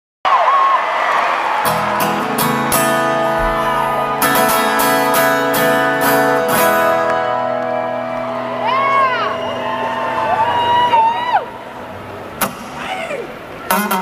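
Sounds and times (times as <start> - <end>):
amplified acoustic guitar strumming: 1.6 - 9.6.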